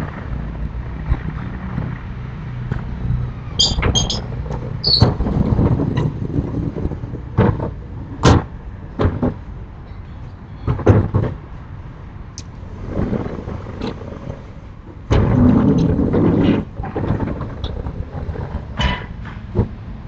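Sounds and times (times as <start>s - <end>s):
shutters rattling sliding: 3.6s - 6.4s
shutters knocking and banging: 3.6s - 9.4s.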